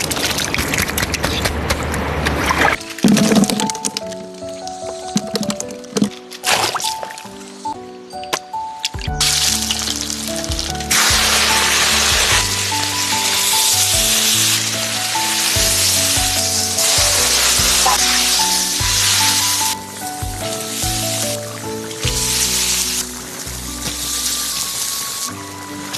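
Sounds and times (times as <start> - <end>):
background music: 2.7 - 25.9
fish sizzling in hot oil: 9.2 - 25.9.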